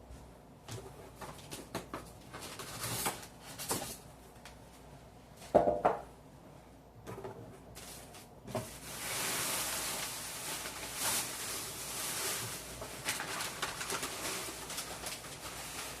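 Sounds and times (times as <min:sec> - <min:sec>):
packaging crinkling: 0:07.9 - 0:16.0.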